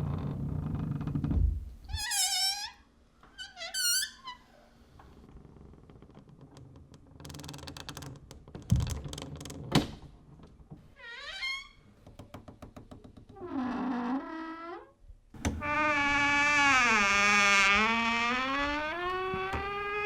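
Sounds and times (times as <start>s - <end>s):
door hinges squeaking and creaking: 1.0s - 4.7s, 11.0s - 20.0s.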